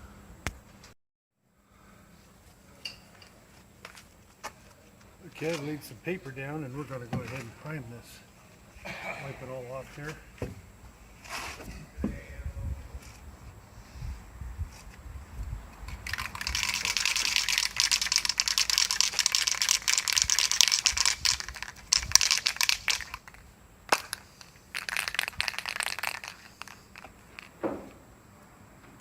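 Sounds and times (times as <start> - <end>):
sharp knock: 27.6 - 28.0.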